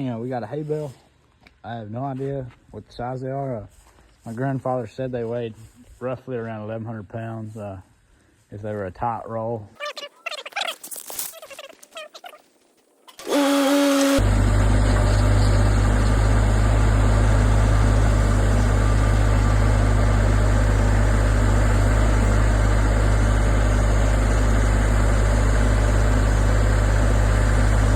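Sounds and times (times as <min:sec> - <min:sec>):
starter whine: 0:13.1 - 0:27.9
diesel engine running: 0:13.2 - 0:27.9.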